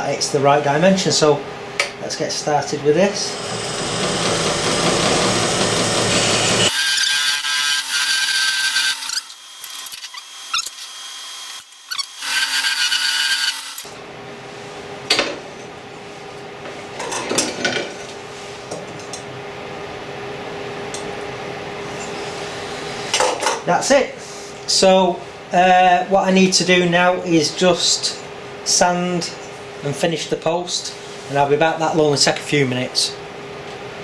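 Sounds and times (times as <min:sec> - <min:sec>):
wood lathe spinning: 0:03.2 - 0:13.9
turning tool cutting wood: 0:03.4 - 0:14.0.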